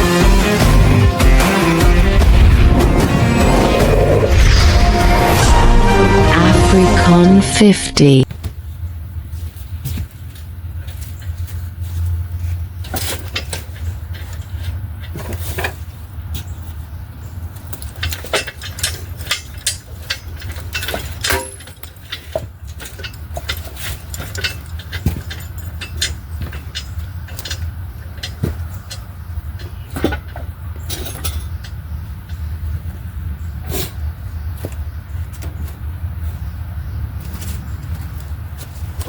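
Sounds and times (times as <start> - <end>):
steady low hum: 1.8 - 9.6.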